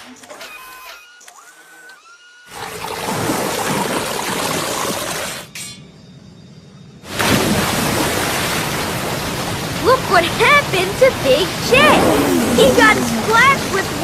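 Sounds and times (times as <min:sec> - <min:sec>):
cartoon water gush: 0:10.4 - 0:14.0.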